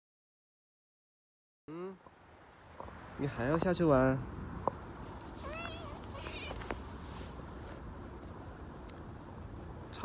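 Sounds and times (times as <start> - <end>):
short pitched vocal sound: 1.7 - 2.0.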